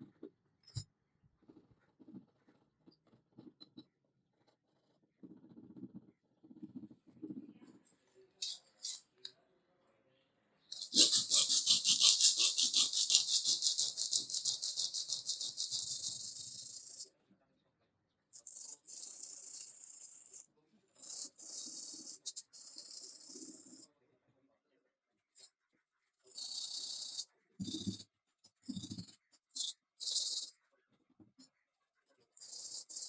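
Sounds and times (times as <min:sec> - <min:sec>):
hand scrubbing metal with abrasive: 0:10.7 - 0:17.0.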